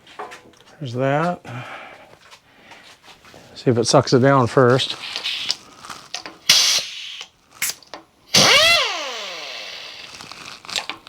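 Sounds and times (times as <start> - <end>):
compressed air hiss: 4.7 - 10.2
air impact wrench whining: 4.8 - 10.4.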